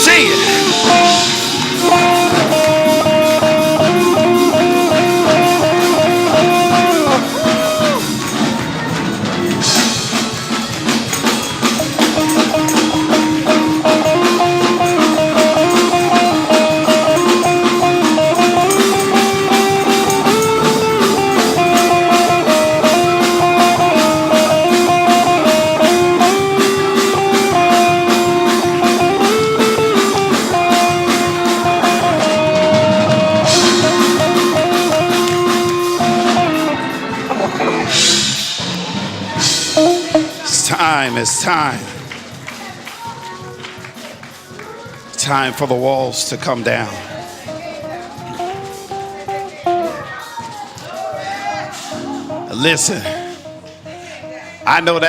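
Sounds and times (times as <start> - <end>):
fast drum beat: 0.0 - 44.5
band playing upbeat instrumental: 0.0 - 55.0.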